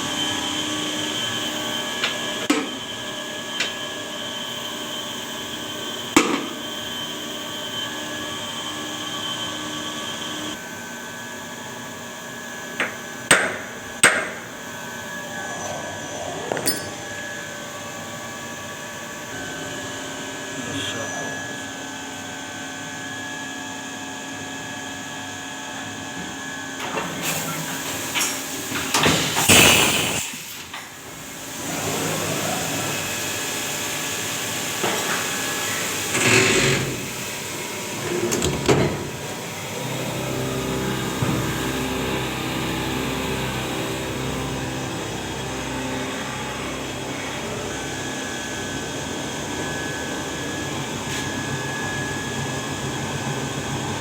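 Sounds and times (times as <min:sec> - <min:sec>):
machine humming: 0:39.3 - 0:54.0.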